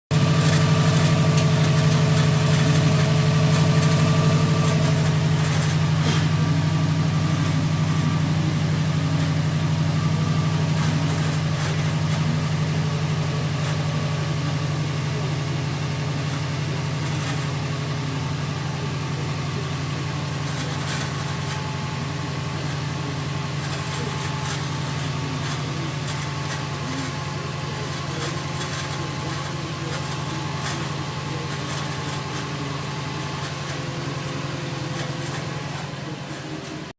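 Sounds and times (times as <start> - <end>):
car engine idling: 0.0 - 36.9.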